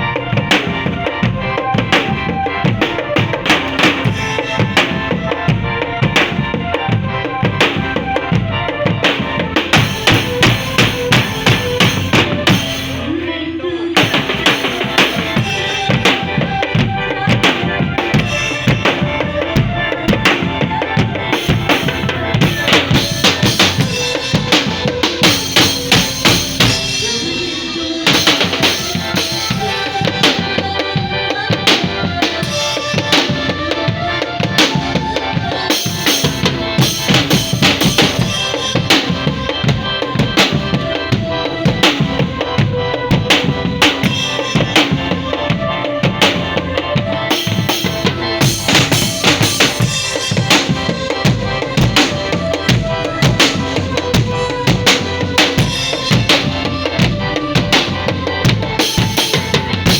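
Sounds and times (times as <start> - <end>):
fast drumming music: 0.0 - 13.3, 14.0 - 59.9
melodic parts: 0.0 - 59.9
bass drum and snare hits: 7.5 - 13.1.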